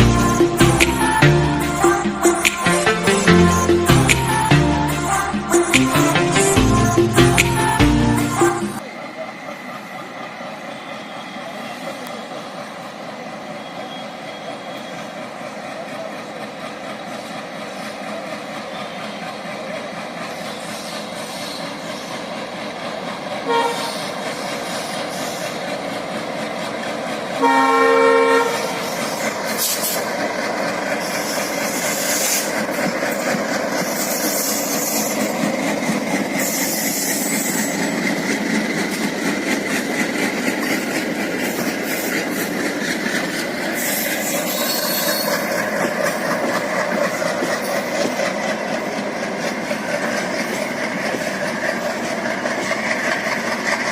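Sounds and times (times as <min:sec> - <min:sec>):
train wheels clickety-clack: 0:11.8 - 0:53.9
train horn: 0:23.4 - 0:24.1, 0:27.4 - 0:28.9.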